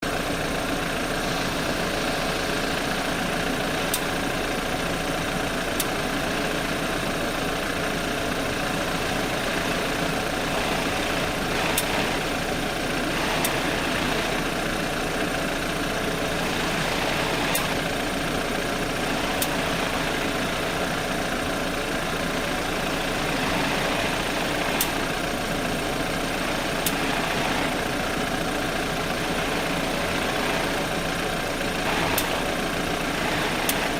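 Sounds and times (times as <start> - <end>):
car engine running: 0.0 - 33.9
wheel ticking: 9.4 - 12.4, 23.0 - 25.1, 29.1 - 33.9.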